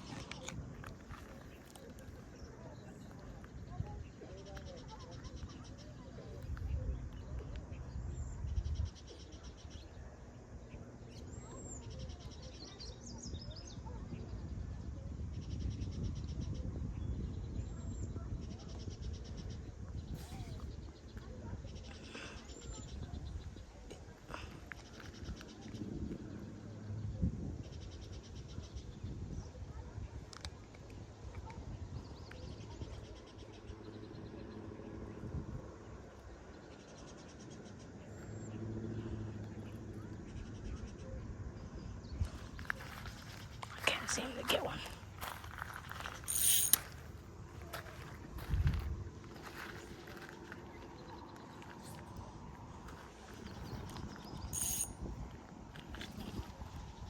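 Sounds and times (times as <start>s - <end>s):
outdoor background noise: 0.0s - 57.0s
birds chirping: 15.3s - 57.0s
distant vehicle engine hum: 33.1s - 46.3s
low rumble on microphone: 46.9s - 57.0s.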